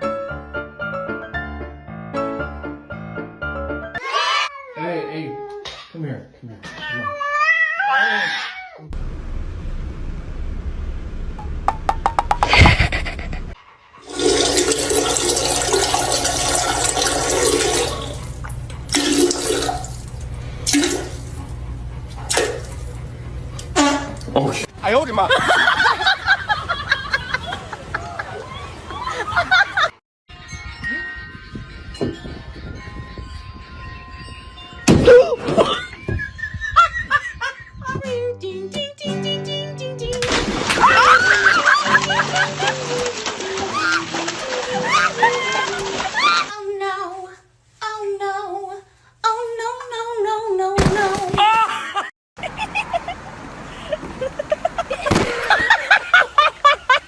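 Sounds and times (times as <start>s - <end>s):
laughter: 12.5s - 13.6s, 25.3s - 30.0s, 35.4s - 37.9s, 40.8s - 43.0s, 51.4s - 53.2s, 53.8s - 57.0s
rushing water: 14.0s - 21.2s, 40.3s - 46.5s.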